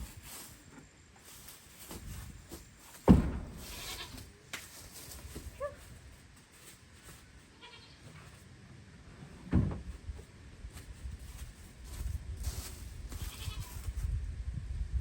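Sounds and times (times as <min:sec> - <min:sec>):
faint rustling: 0:00.0 - 0:08.5
dull thump: 0:02.9 - 0:03.8, 0:09.5 - 0:09.9.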